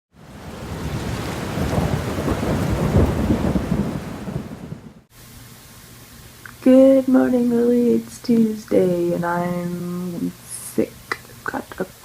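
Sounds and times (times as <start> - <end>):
heavy rain: 0.1 - 6.7.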